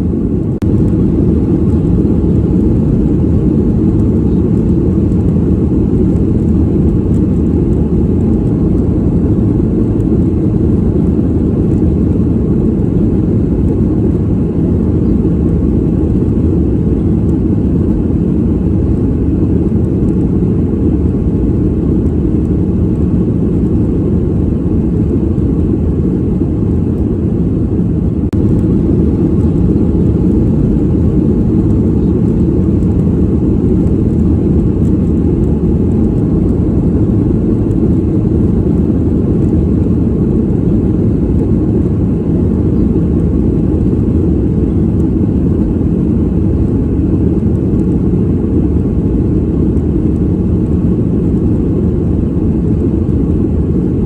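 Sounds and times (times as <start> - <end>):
airliner cabin engine rumble: 0.0 - 54.0.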